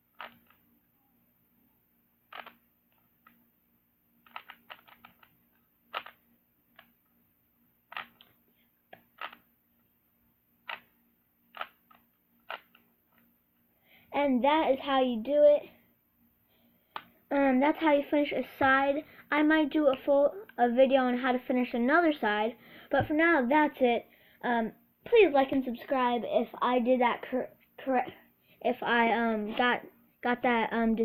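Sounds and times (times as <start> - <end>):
puzzle cube clicking: 0.1 - 0.6, 2.3 - 3.4, 4.2 - 6.2, 7.9 - 8.3, 8.9 - 9.5, 10.7 - 10.9, 11.5 - 12.9.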